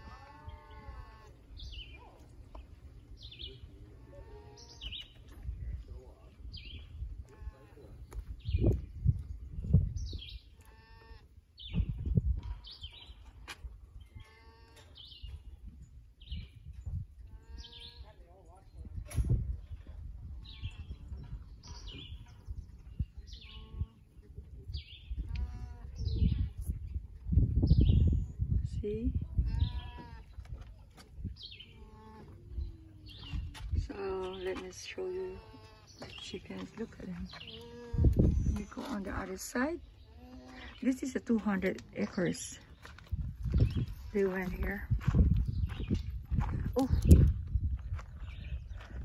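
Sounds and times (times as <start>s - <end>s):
songbird calling: 0.0s - 5.4s, 17.3s - 18.2s, 31.4s - 41.2s
wind on microphone: 0.0s - 49.0s.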